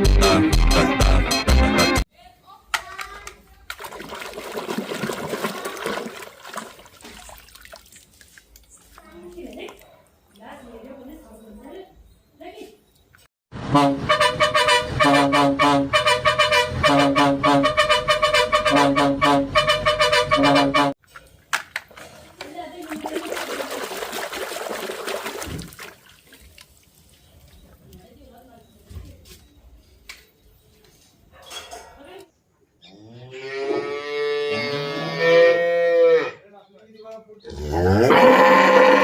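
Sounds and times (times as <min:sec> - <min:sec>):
bus horn playing a tune: 0:13.6 - 0:21.0
cow mooing: 0:33.0 - 0:36.4, 0:37.5 - 0:39.0.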